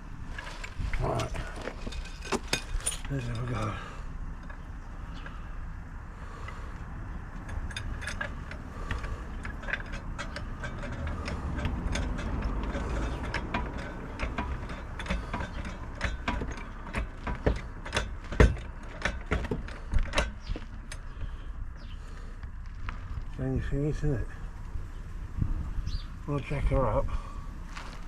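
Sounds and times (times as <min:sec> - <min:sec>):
car jack clicking and clanking: 0:07.3 - 0:21.9.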